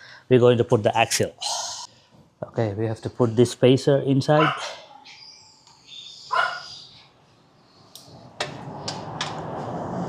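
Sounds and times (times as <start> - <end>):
dog barking: 4.3 - 5.0, 6.3 - 6.8.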